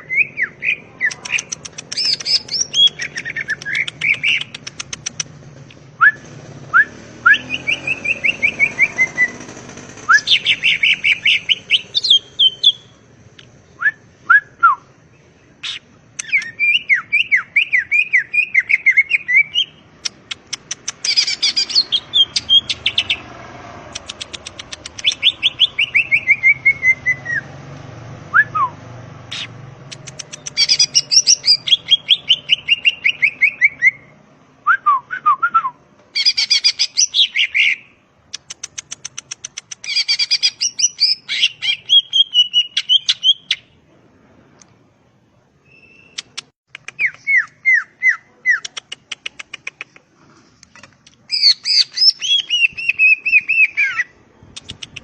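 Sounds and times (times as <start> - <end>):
bird singing whistles and trills: 0.0 - 4.7, 6.0 - 9.4, 10.1 - 12.9, 15.6 - 19.8, 21.0 - 23.2, 24.4 - 27.5, 30.3 - 34.1, 34.7 - 37.9, 39.8 - 43.7, 45.6 - 46.3, 46.9 - 48.7, 51.3 - 55.0.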